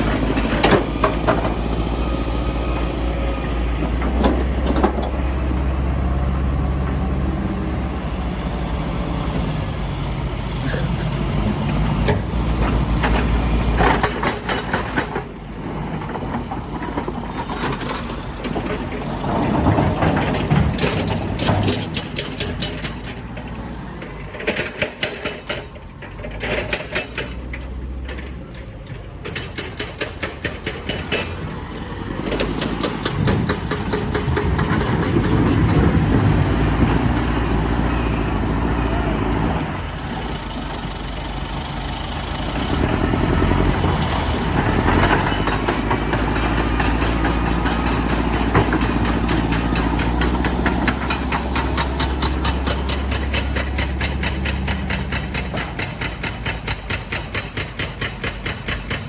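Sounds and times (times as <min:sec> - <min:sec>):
diesel machinery rumble: 0:00.0 - 0:59.0
rapid metallic clattering: 0:44.8 - 0:59.0.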